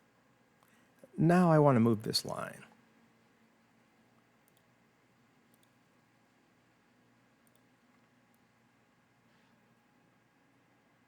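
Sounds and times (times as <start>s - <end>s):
faint mouse clicks: 4.4s - 4.8s, 5.4s - 5.8s, 7.4s - 8.5s.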